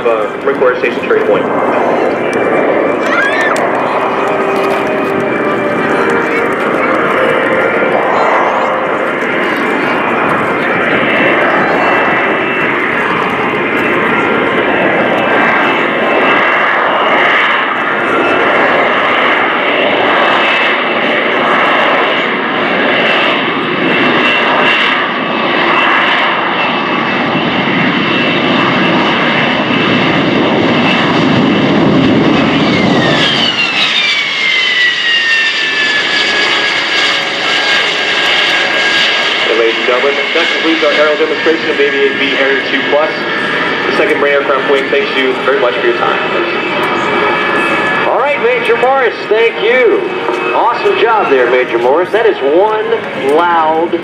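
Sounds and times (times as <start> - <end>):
jet engine roar with whine: 0.0 - 54.0.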